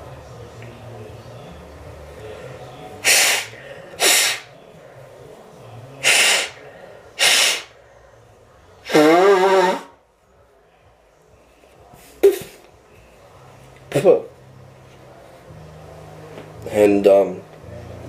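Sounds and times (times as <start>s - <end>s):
person blowing nose: 3.0s - 4.5s, 6.0s - 6.6s, 7.2s - 7.7s, 8.8s - 10.0s.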